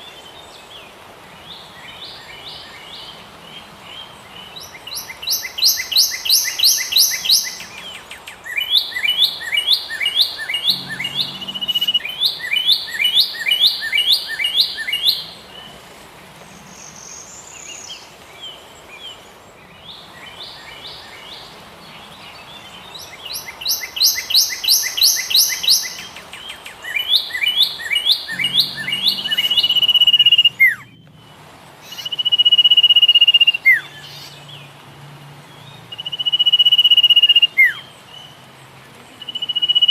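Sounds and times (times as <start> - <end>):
songbirds chirping: 0.0 - 39.9
high-pitched bird trill: 10.4 - 14.5, 28.2 - 31.0.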